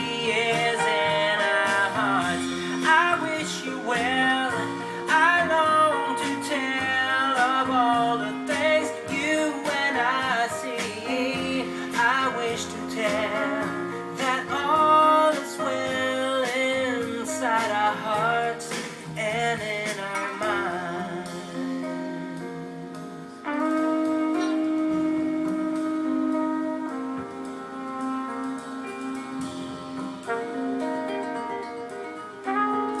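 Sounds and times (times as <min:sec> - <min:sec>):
song with guitar: 0:00.0 - 0:33.0.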